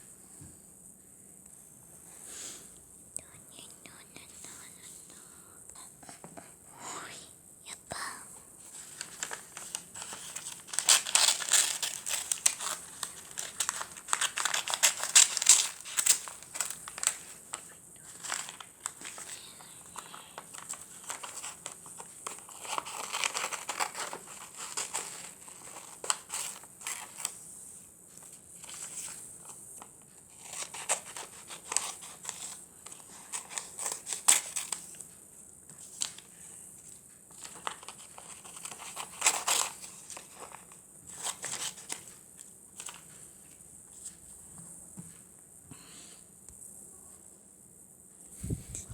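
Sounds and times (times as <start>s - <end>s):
paper crinkling and rustling: 8.6s - 27.4s, 28.2s - 44.2s.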